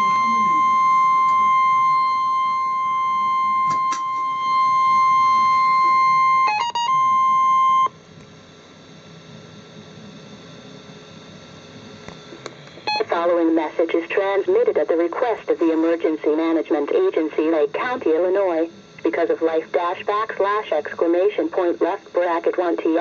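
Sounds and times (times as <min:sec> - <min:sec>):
shrill alarm tone beep: 0:00.0 - 0:08.0
faint radio hiss: 0:09.3 - 0:23.0.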